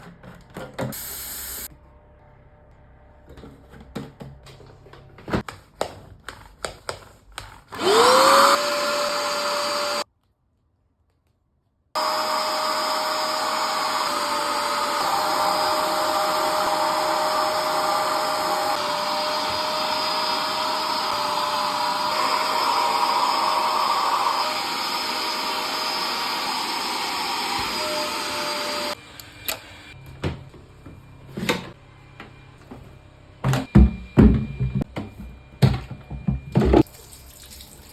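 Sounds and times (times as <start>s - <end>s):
upholstery cleaner suction motor: 7.7s - 10.0s, 12.0s - 30.0s.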